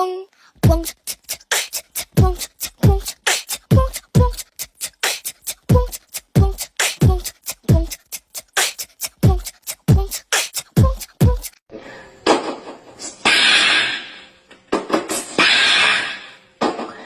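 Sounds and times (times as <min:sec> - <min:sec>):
beatbox rhythm: 0:00.5 - 0:11.7.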